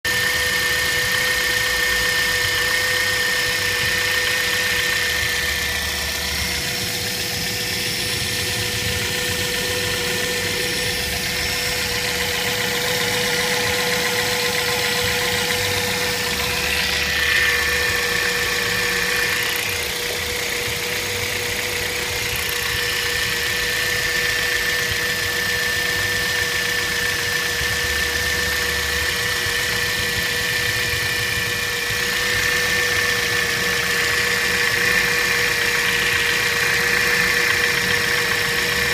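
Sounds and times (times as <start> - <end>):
constant engine whine: 0.0 - 38.9
car engine idling: 3.8 - 24.6.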